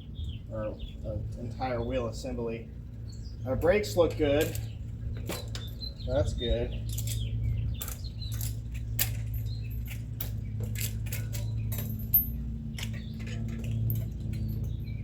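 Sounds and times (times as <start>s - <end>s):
metallic clicks and rattles: 3.6s - 6.0s, 6.8s - 15.0s.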